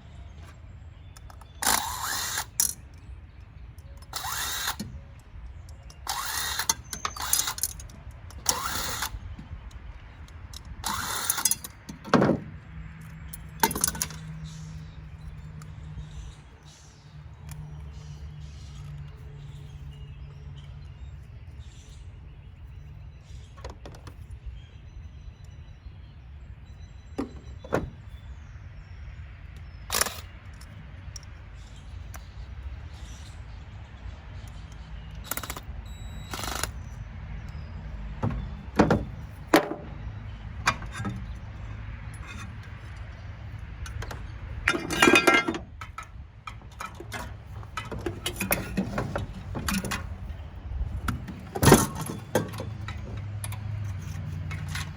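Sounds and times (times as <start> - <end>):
metal parts clinking and knocking: 1.2 - 3.0, 3.7 - 19.2, 27.2 - 28.1, 29.9 - 31.4, 35.2 - 35.7, 36.3 - 36.8, 37.4 - 54.9
rattling clatter: 13.3 - 14.3, 27.2 - 28.0, 38.2 - 43.2, 43.8 - 54.9.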